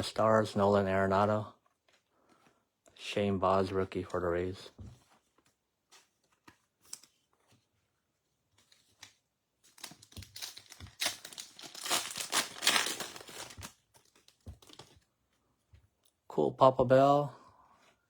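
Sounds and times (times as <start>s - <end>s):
card pack wrapper tearing: 9.7s - 14.9s.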